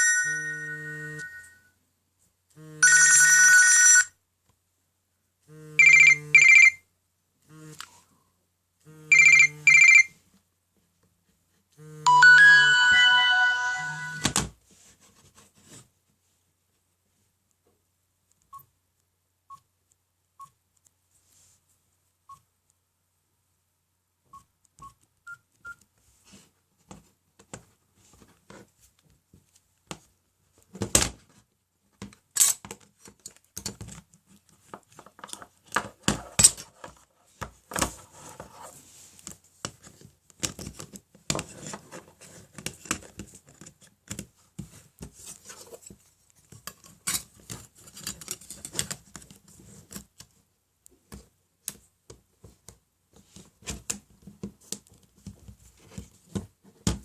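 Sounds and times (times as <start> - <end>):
phone key beeps: 9.1 - 10.1.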